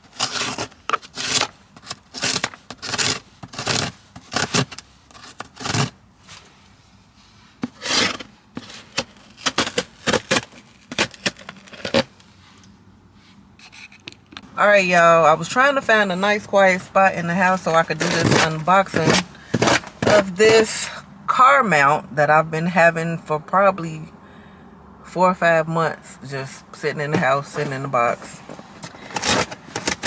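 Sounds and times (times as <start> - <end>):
scraping and rubbing: 0.0 - 21.0, 27.0 - 30.0.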